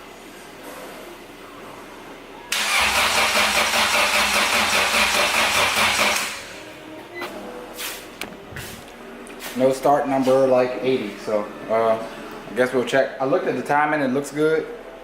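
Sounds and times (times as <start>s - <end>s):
starter cranking car engine: 2.6s - 6.4s.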